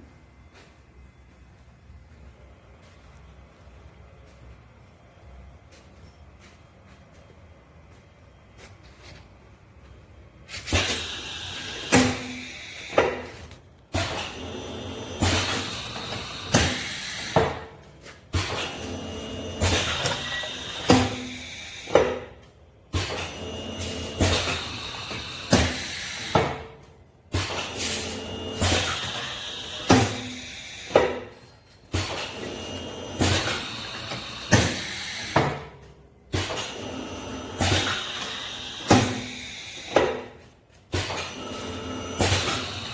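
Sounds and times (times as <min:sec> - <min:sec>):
pipe-bending machine working: 0:10.4 - 0:42.9.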